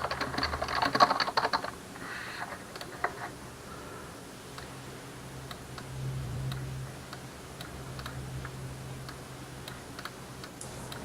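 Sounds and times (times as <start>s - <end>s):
computer keys clicking: 0.0s - 1.8s
low steady hum: 0.0s - 11.0s.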